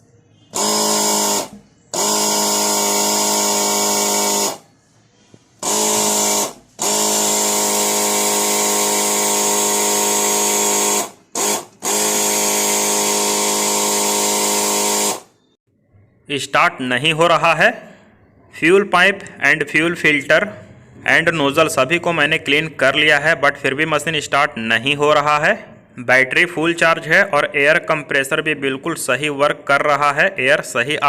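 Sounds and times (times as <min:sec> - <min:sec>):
air compressor motor hum with hiss: 0:00.5 - 0:04.6, 0:05.6 - 0:15.3.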